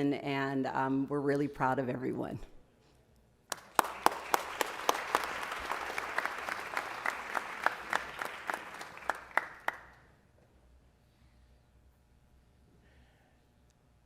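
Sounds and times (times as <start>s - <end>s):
audience applauding: 3.5s - 10.1s
sharp individual claps: 3.5s - 10.1s.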